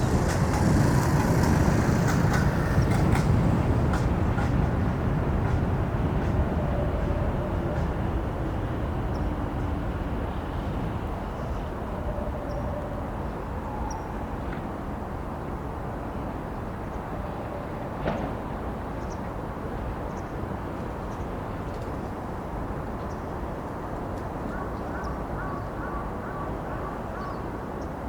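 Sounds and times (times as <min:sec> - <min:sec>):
low outdoor rumble: 0:00.0 - 0:06.4.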